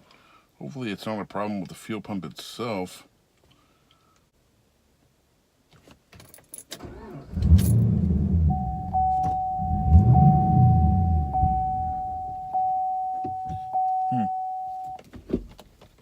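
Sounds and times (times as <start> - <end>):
engine cranking without starting: 6.8 - 9.0
car warning chime: 8.2 - 15.0.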